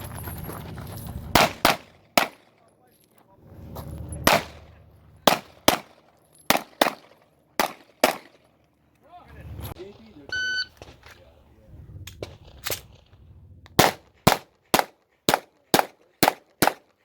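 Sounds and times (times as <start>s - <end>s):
pistol shots: 1.3s - 2.5s, 4.2s - 4.6s, 5.2s - 8.4s, 13.7s - 16.9s.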